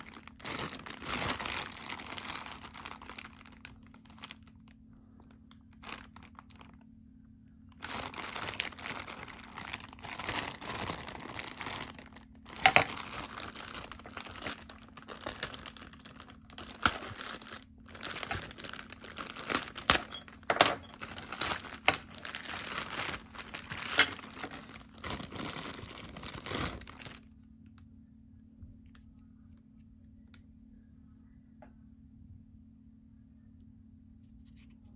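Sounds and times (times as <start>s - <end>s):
packaging crinkling and rustling: 0.0s - 6.9s, 7.7s - 27.3s.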